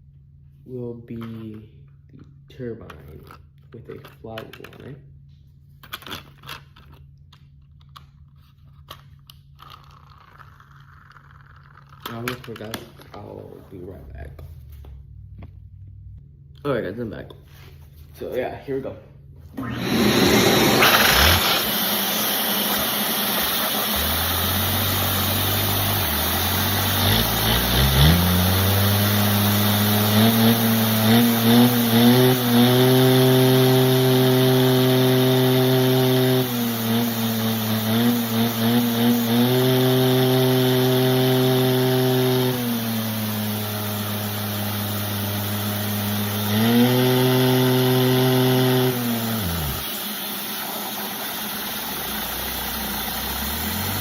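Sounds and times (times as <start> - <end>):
engine revving: 19.6 - 54.0.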